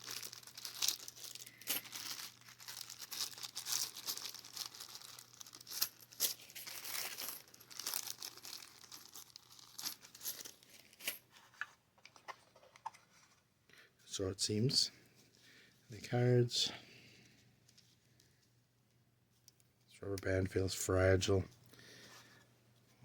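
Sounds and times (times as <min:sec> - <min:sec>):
plastic bags crinkling: 0:00.0 - 0:13.0.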